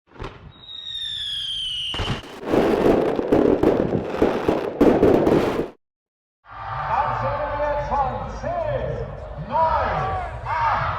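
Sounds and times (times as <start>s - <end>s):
fireworks crackling and banging: 0.1s - 5.8s
firework whistle: 0.4s - 2.4s.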